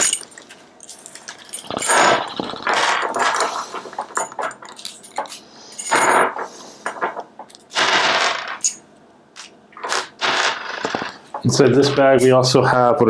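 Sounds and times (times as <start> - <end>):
plastic bag crinkling: 0.0 - 5.0, 9.8 - 11.7
metal parts clinking: 0.0 - 8.8.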